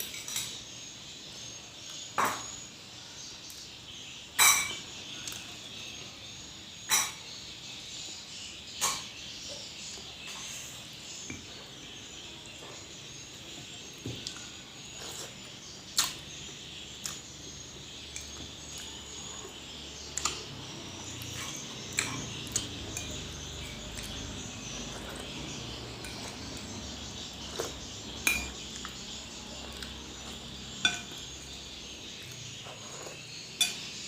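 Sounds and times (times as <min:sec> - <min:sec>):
utensils clinking against dishes: 0:00.0 - 0:00.7, 0:04.4 - 0:05.4, 0:06.8 - 0:07.3, 0:08.8 - 0:09.2, 0:21.1 - 0:25.3, 0:27.6 - 0:29.0, 0:29.7 - 0:31.5, 0:32.4 - 0:34.0
insects chirping: 0:00.0 - 0:34.0
person eating: 0:27.4 - 0:28.0.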